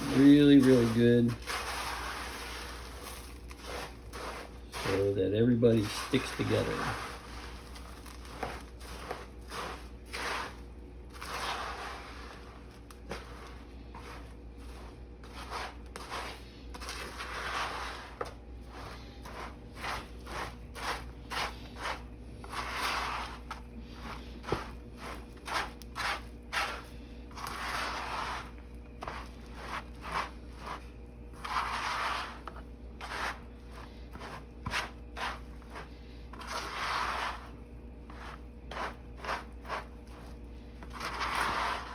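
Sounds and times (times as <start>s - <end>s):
spatula scraping in bowl: 0.0s - 41.9s
cereal crackling clicks: 7.5s - 9.0s.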